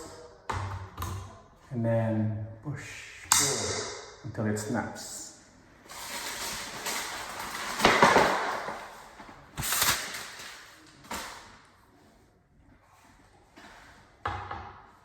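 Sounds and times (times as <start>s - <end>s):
scraping and handling noise: 5.8s - 14.2s.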